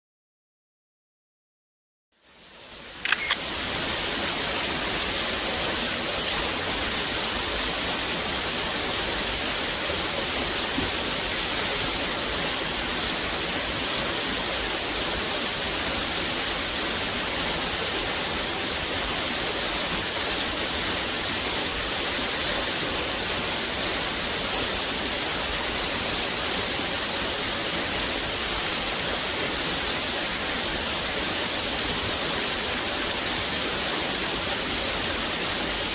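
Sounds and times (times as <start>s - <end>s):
rushing water hiss: 2.2s - 35.9s
sharp clicks: 3.0s - 3.4s.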